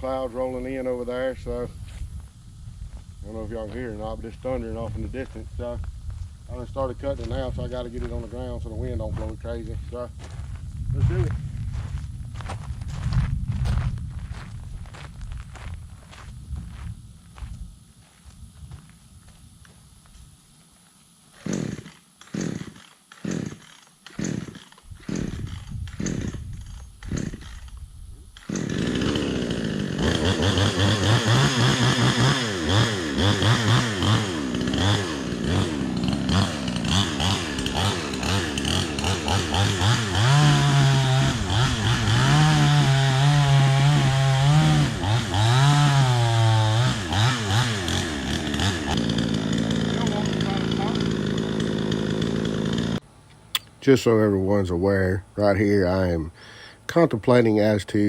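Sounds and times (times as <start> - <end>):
chainsaw cord pulls: 21.3 - 27.8, 28.4 - 53.0
chainsaw sawing: 21.3 - 27.8, 28.4 - 53.1.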